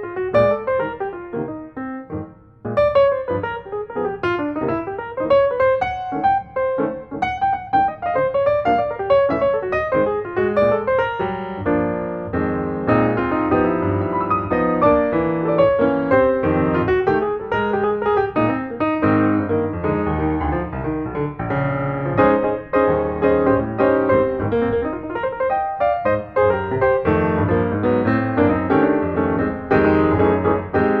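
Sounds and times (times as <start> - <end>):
busy piano music: 0.0 - 31.0.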